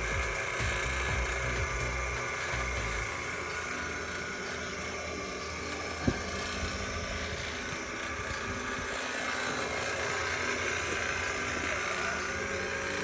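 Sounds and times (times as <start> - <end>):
vacuum pump motor humming: 0.0 - 13.0.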